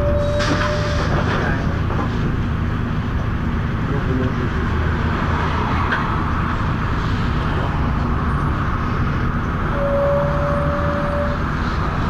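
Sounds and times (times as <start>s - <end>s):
diesel bus engine and cooling fan: 0.0s - 12.0s
steady squealing tone: 9.7s - 11.5s.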